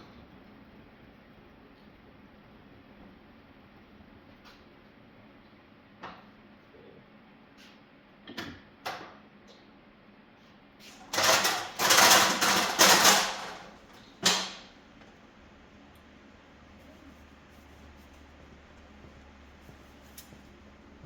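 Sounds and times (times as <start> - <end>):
pallet jack rattling: 11.0 - 14.7.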